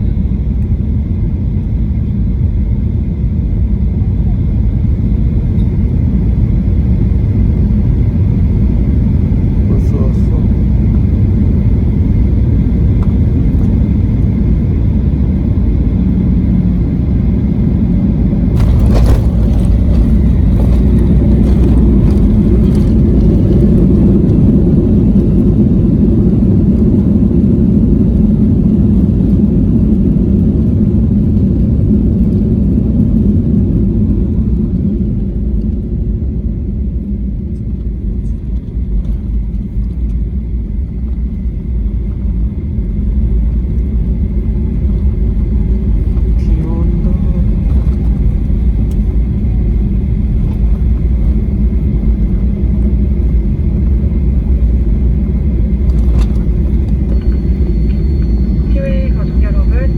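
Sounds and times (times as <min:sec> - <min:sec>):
airliner cabin rumble: 0:00.0 - 0:59.9
sharp jolts: 0:18.6 - 0:22.8.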